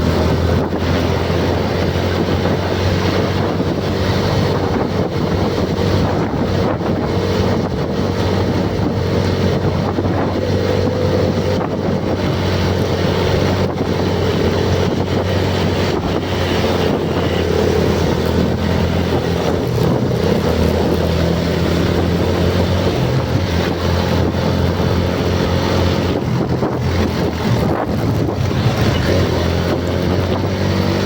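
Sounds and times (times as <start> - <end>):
engine running with low hum: 0.0 - 31.0
wind on microphone: 0.0 - 31.0.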